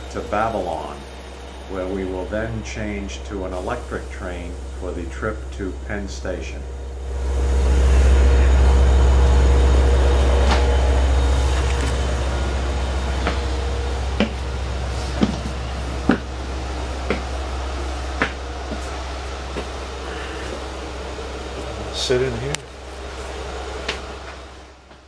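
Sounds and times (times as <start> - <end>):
diesel locomotive rumbling: 0.0 - 25.0
steady hum: 0.0 - 25.0
sharp knocks: 14.2 - 14.4.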